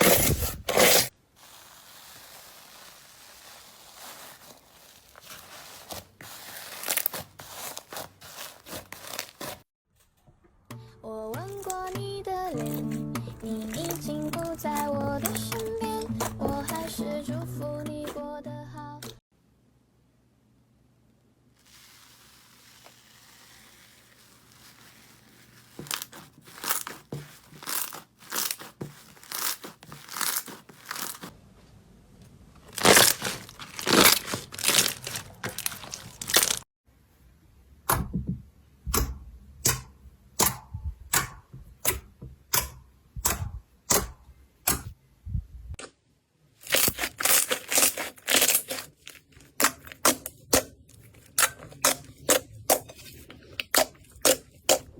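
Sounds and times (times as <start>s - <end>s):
slime squishing and crackling: 0.0s - 9.7s, 13.4s - 17.0s, 21.7s - 31.3s, 32.7s - 36.7s, 46.6s - 54.9s.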